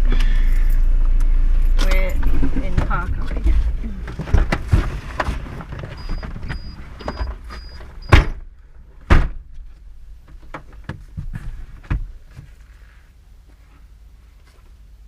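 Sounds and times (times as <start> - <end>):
heavy thump: 2.1 - 5.5
knocks and rattles in cabin: 2.1 - 12.6
door-open warning chime beeping: 6.0 - 8.3
car door slamming: 9.0 - 9.5.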